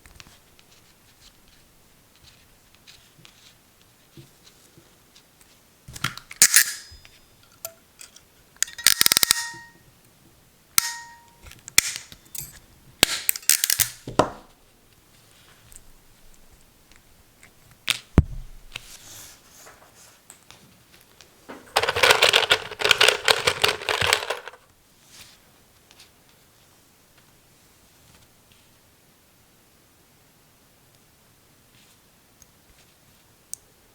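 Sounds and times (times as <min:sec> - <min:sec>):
hand tool clicking: 0:06.4 - 0:09.8, 0:10.8 - 0:14.0.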